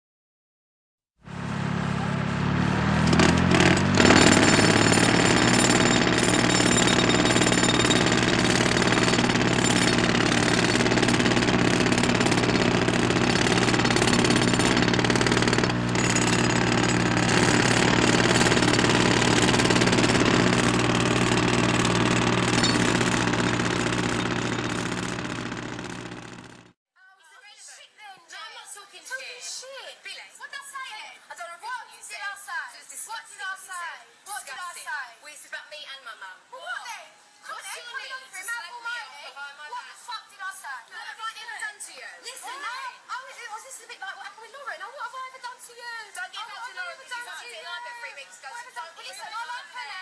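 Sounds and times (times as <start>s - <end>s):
loud machine running: 1.3s - 26.7s.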